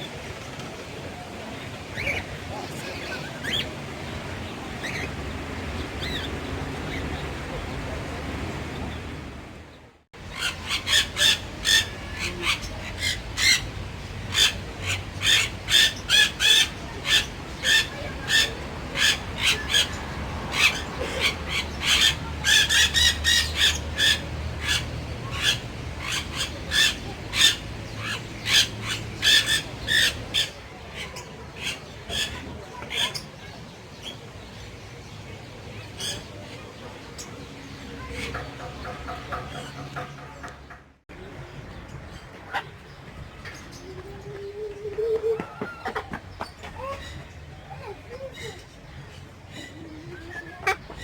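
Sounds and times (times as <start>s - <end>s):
birds calling sharply: 10.2s - 51.0s.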